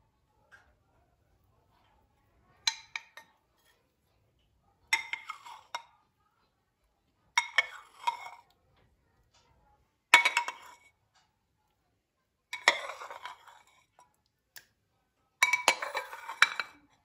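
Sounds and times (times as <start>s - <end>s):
dishes and cutlery clattering: 2.6s - 3.7s, 4.9s - 6.0s, 7.4s - 8.6s, 10.1s - 10.9s, 12.5s - 14.1s, 15.4s - 17.0s.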